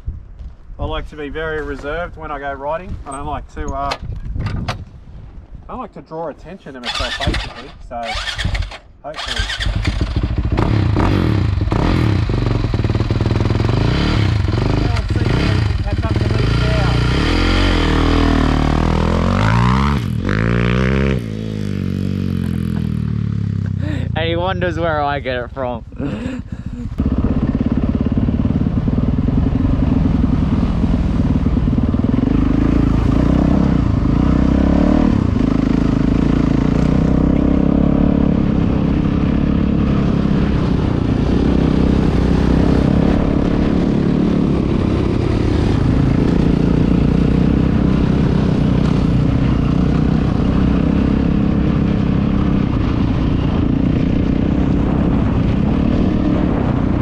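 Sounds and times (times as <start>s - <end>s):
dirt bike engine running: 6.9s - 24.6s, 26.4s - 34.6s.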